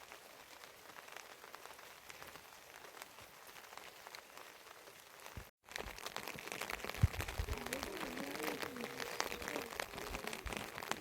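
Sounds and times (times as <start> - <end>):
heavy rain falling: 0.0 - 11.0
faint voice: 7.4 - 11.0.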